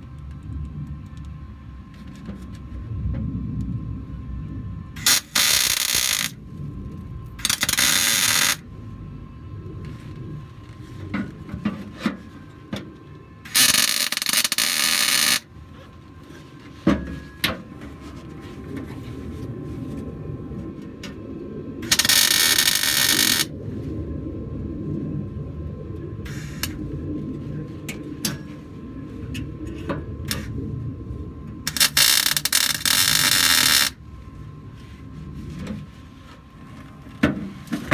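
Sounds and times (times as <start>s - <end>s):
welding bursts: 5.0s - 6.4s, 7.4s - 8.6s, 13.5s - 15.4s, 21.8s - 23.5s, 31.7s - 34.0s.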